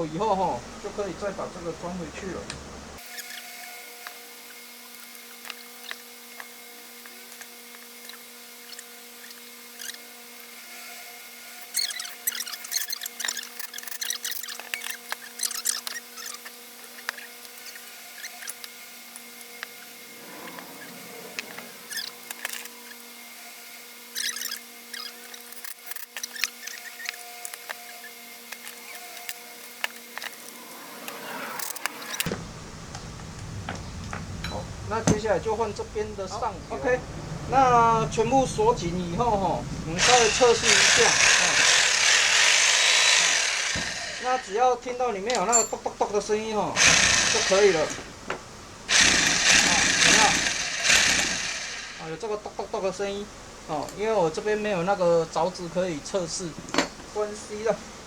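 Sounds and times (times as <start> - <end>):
steady low hum: 28.0 - 45.0
metal tools clicking and clinking: 45.3 - 46.0.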